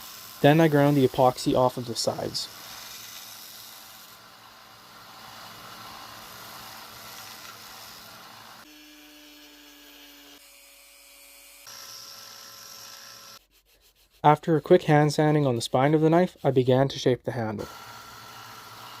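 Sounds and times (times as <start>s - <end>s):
power grinder grinding: 17.6s - 19.0s.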